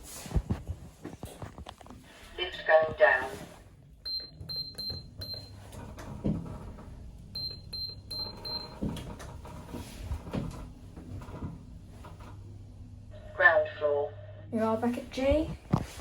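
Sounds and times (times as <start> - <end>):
lift humming: 3.8 - 15.5
short high-pitched beeps: 4.1 - 5.5, 7.4 - 8.7.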